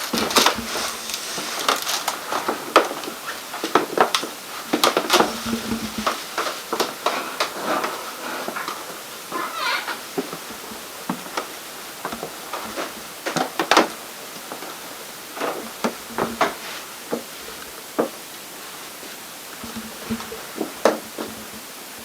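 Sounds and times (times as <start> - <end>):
steady hiss: 0.0 - 22.0
irregular knocks and clicks: 19.5 - 22.0.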